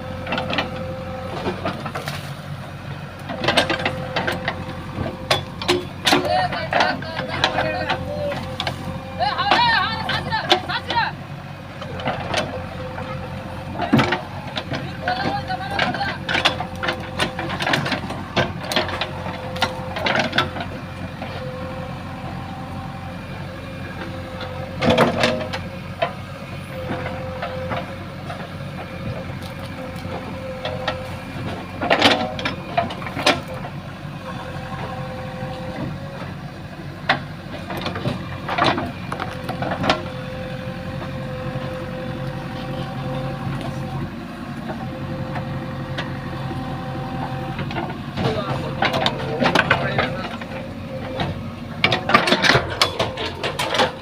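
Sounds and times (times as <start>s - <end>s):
diesel engine running: 0.0s - 54.0s
machine knocks and clanks: 3.3s - 8.8s, 11.8s - 21.7s, 26.8s - 33.8s, 47.6s - 54.0s.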